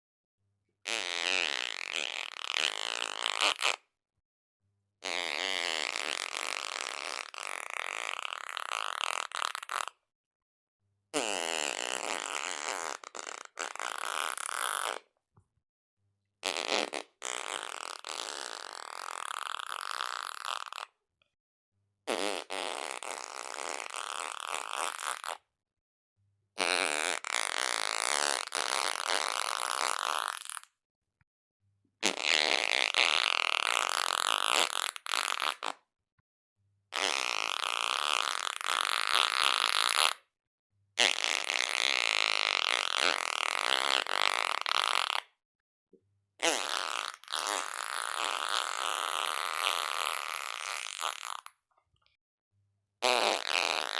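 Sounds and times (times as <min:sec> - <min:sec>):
fart sounds: 0:00.8 - 0:03.8, 0:05.0 - 0:10.0, 0:11.1 - 0:15.1, 0:16.4 - 0:21.0, 0:22.1 - 0:25.5, 0:26.6 - 0:30.7, 0:32.0 - 0:35.9, 0:36.9 - 0:40.3, 0:41.0 - 0:45.4, 0:46.4 - 0:51.6, 0:53.0 - 0:53.9.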